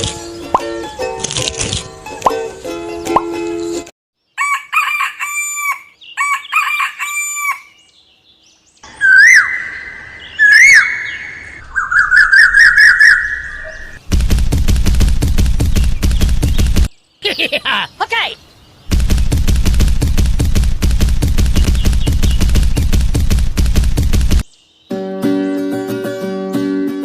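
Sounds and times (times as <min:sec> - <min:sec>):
music: 0:00.0 - 0:03.9, 0:24.9 - 0:27.0
rooster crowing: 0:04.4 - 0:07.8
chirping notes: 0:05.3 - 0:14.0, 0:21.2 - 0:25.4.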